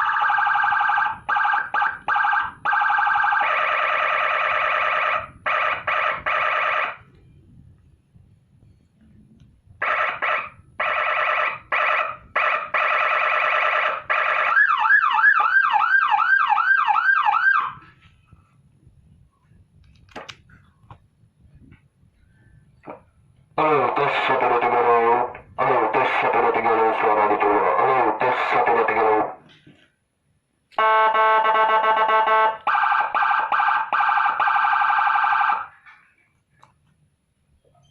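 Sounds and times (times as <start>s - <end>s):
siren yelp tone: 0.0s - 7.2s, 9.7s - 18.1s, 23.6s - 29.4s, 30.8s - 35.8s
buzzing siren horn blasts: 30.8s - 33.5s.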